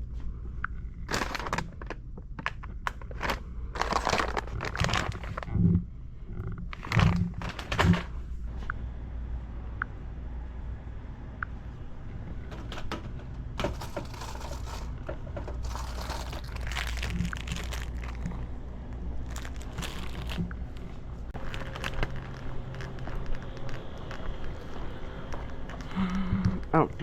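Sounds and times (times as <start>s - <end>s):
steady low hum: 0.0s - 27.0s
packaging crinkling: 1.0s - 5.5s, 6.7s - 8.2s, 13.6s - 26.1s.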